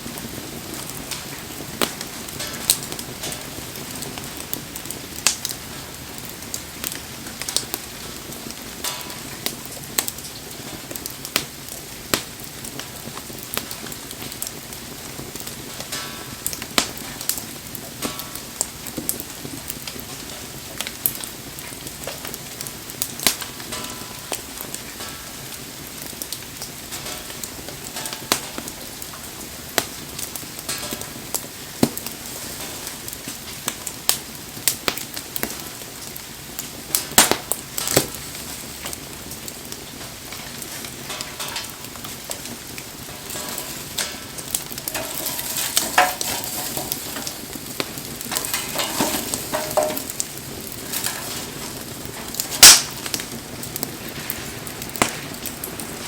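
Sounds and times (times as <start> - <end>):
bonfire sizzling in rain: 0.0 - 56.0
fire crackling and popping: 0.0 - 56.0.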